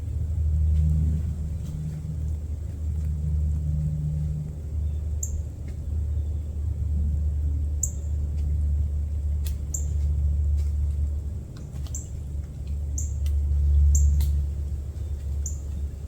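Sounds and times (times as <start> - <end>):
steady low rumble: 0.0 - 16.0
small bird chipping: 4.8 - 6.3, 12.9 - 13.3, 15.0 - 15.9.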